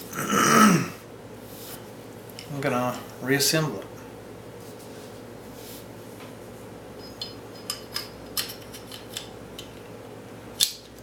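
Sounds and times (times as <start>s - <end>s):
revolver parts clicking: 7.0s - 9.9s.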